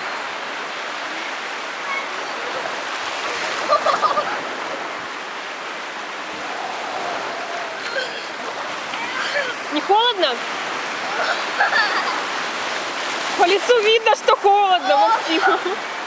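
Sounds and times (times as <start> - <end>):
surf breaking over shallow water: 0.0 - 16.0
faint voices or shouts: 6.3 - 9.6.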